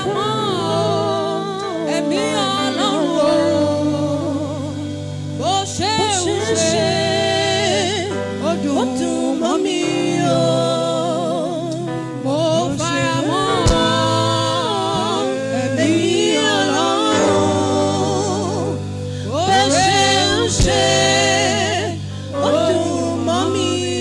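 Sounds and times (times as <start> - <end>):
voices singing with vibrato: 0.0 - 24.0.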